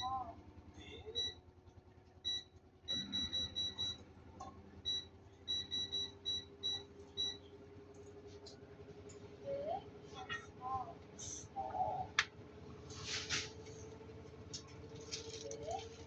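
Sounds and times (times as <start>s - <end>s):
washing machine beeps: 0.0s - 1.4s, 2.2s - 7.5s
low steady hum: 0.0s - 16.0s.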